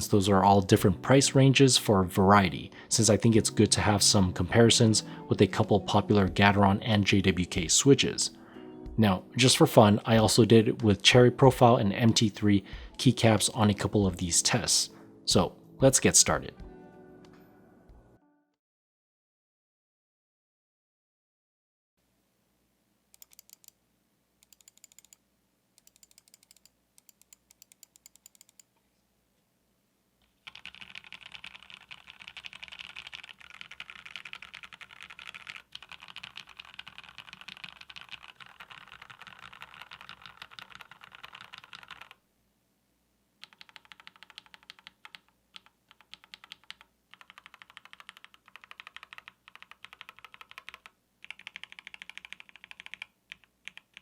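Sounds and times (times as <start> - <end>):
typing on mechanical keyboard: 23.2 - 23.7, 24.4 - 25.2, 25.8 - 28.7, 30.3 - 42.2, 43.4 - 54.0.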